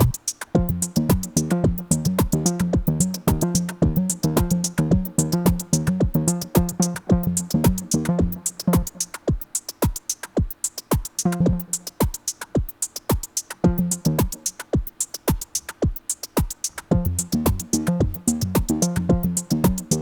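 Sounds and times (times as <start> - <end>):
synth bass line: 0.0 - 9.0, 16.9 - 20.0
drum machine kicks: 0.0 - 20.0
ticking hi-hats: 0.0 - 20.0.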